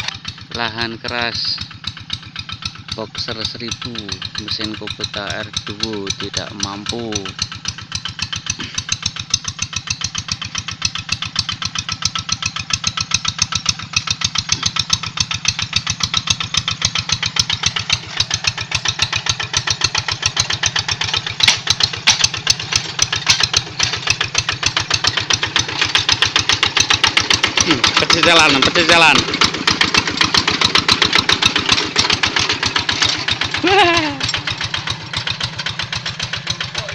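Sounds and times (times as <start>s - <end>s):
diesel engine chugging: 0.0s - 36.9s.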